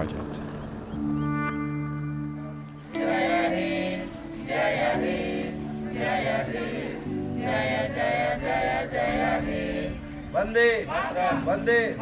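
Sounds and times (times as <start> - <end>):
held low chords: 0.0 - 12.0
group singing in chorus: 2.9 - 10.2, 10.9 - 11.7.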